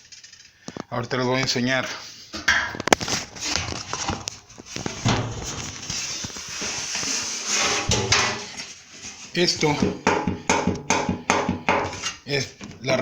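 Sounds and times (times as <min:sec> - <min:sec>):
rollers clattering and knocking: 0:01.9 - 0:08.8.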